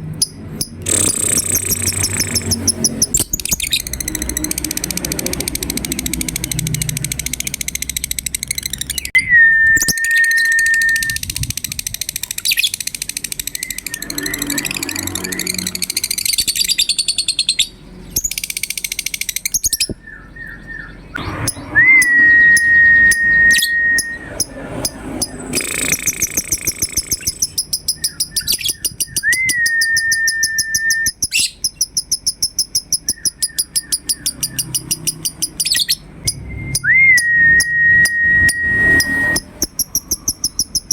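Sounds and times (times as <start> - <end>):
lovebirds chattering and trilling: 0.1 - 9.2, 9.8 - 36.8, 39.0 - 40.9
long whistled bird note: 21.5 - 24.3.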